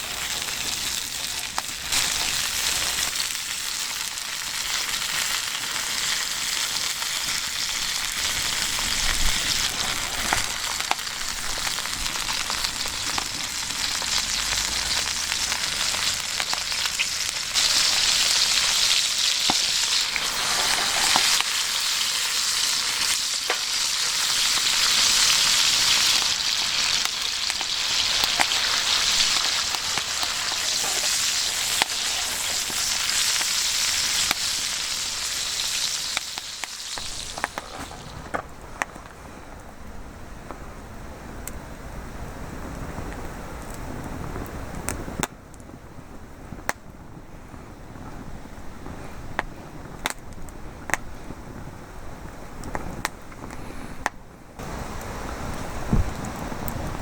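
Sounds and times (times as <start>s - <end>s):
food sizzling in a frying pan: 0.0s - 38.3s
campfire popping: 0.0s - 57.0s.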